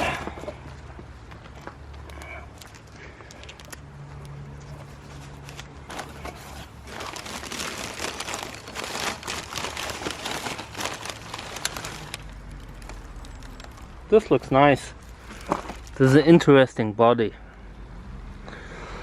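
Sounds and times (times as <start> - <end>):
packing material crinkling: 4.6 - 14.0, 14.9 - 16.2.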